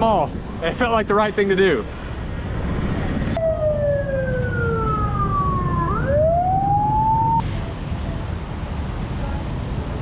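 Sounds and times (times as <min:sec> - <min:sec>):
low street rumble: 0:00.0 - 0:10.0
gliding whistle sound effect: 0:03.4 - 0:07.4.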